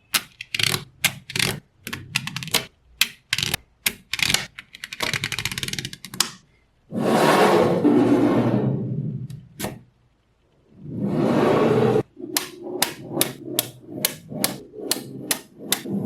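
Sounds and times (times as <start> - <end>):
magnetic balls clicking: 0.0 - 6.4, 12.2 - 16.0.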